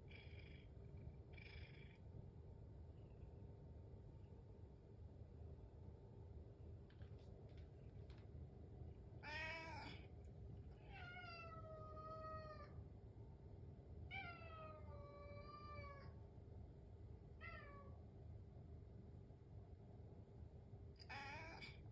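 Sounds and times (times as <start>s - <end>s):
cat meowing: 9.2s - 10.0s, 10.8s - 12.8s, 14.1s - 16.1s, 21.0s - 21.8s.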